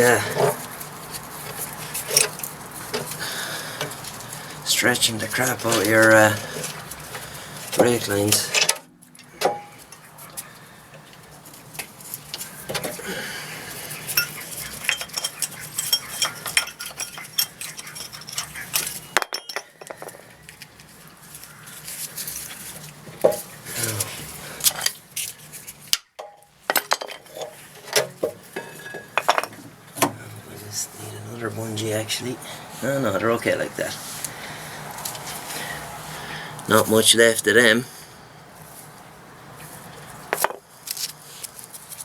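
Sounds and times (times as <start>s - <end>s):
metallic clinks and scrapes: 0.2s - 3.2s, 13.7s - 20.2s.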